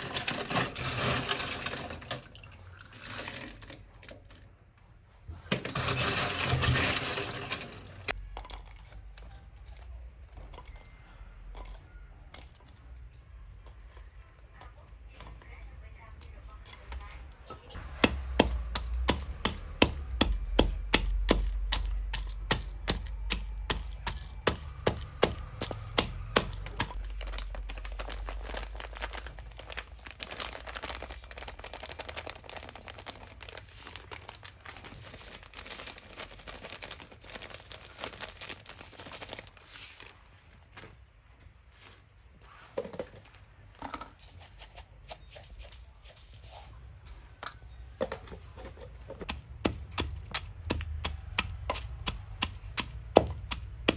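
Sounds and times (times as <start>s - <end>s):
crackling and rustling: 5.5s - 53.9s.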